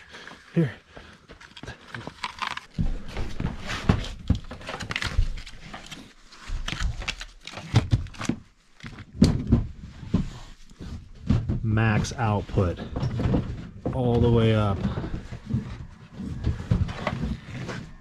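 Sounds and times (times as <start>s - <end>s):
knocks and thumps: 8.9s - 18.0s.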